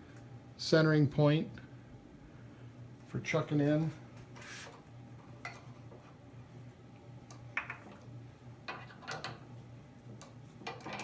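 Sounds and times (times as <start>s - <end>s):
steady low hum: 0.0s - 10.8s
metal parts clicking and knocking: 8.7s - 9.4s, 10.6s - 11.0s.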